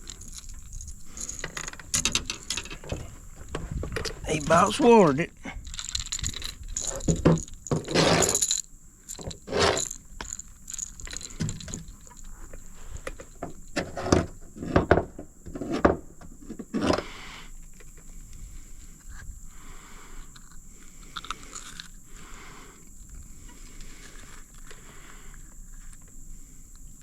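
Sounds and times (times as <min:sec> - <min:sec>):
scraping knocking and rattling: 0:00.0 - 0:04.6, 0:05.6 - 0:12.2.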